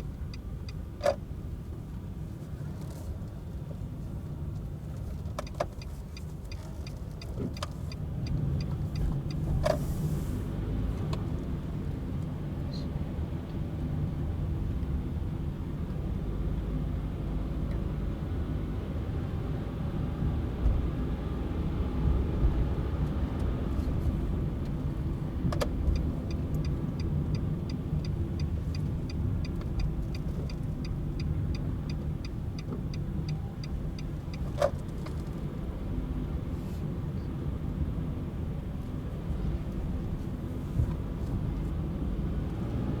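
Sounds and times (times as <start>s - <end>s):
turn signal ticking: 0.0s - 12.8s, 22.0s - 37.0s
car engine and road rumble: 0.0s - 43.0s.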